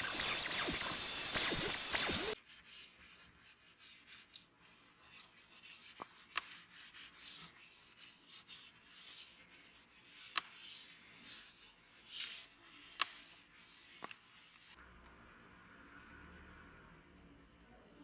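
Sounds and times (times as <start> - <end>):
faint rubbing strokes: 0.0 - 2.4
sharp clicks: 0.0 - 2.4.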